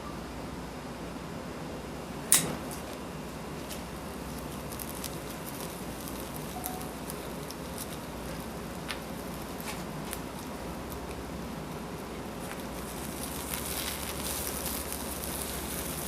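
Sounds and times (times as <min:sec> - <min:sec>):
sharp pops: 0:02.3 - 0:03.0
barbecue sizzling: 0:02.3 - 0:16.0.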